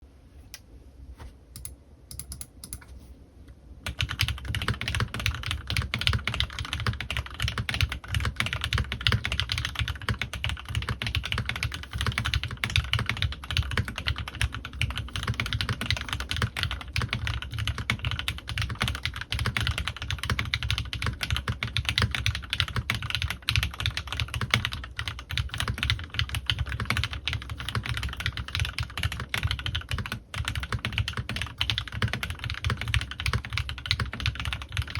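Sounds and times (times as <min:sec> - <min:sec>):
mechanical keyboard typing: 0:01.6 - 0:02.9, 0:03.8 - 0:34.9.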